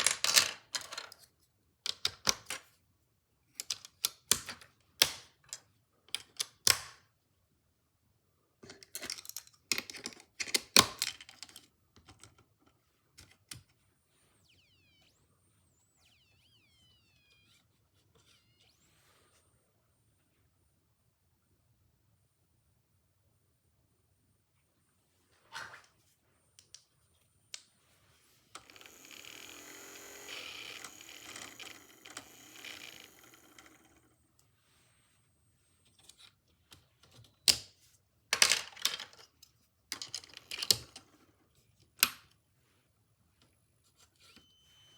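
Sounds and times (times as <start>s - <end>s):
plastic parts clicking together: 1.9s - 2.6s, 3.6s - 7.0s, 8.6s - 12.5s, 38.4s - 41.2s
toy electric motor whining: 14.2s - 19.4s, 28.6s - 35.9s, 44.2s - 44.9s.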